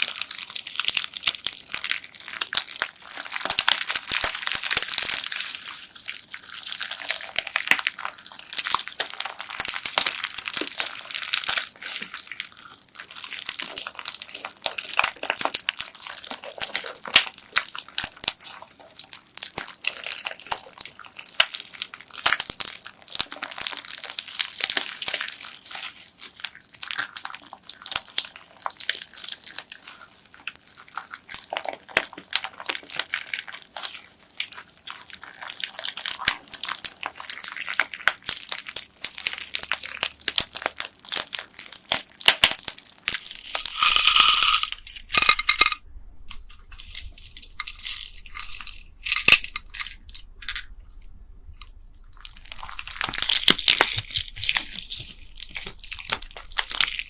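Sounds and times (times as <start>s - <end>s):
bead-filled slime crunching: 0.0s - 57.0s.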